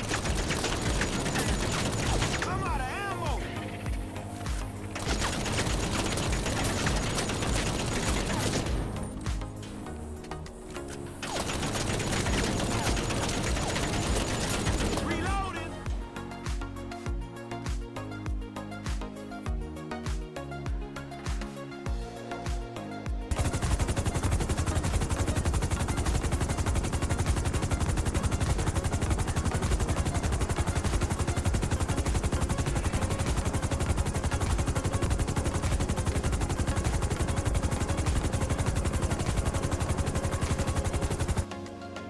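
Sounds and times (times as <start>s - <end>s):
machine gun firing: 0.0s - 3.8s, 4.4s - 9.7s, 11.2s - 15.7s, 23.3s - 41.5s
music: 0.0s - 42.0s.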